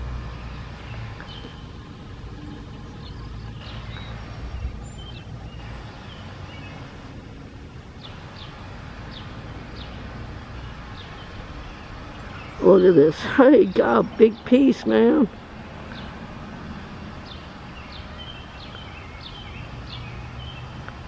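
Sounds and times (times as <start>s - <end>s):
steady low rumble: 0.0s - 21.0s
high bird chirps: 2.7s - 6.9s, 17.2s - 20.7s.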